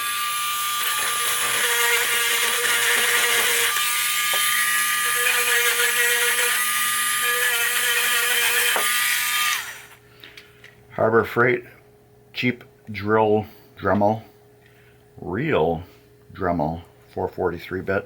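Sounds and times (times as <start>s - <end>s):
rotary tool whining: 0.0s - 10.0s.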